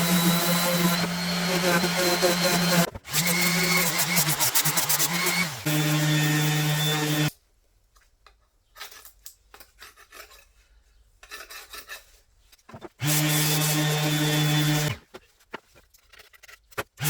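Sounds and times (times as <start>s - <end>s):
power tool motor running: 0.0s - 7.3s, 13.0s - 15.0s.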